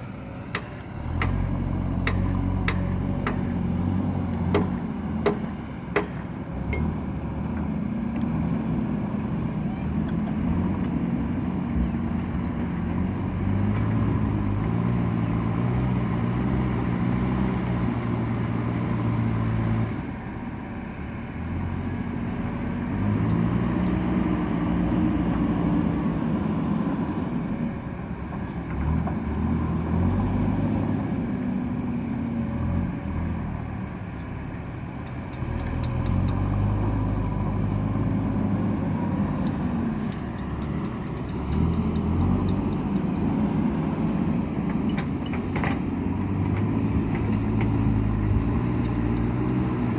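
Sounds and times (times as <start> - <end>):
heavy diesel engine under load: 0.0 - 49.9
quick clicks: 39.5 - 43.2.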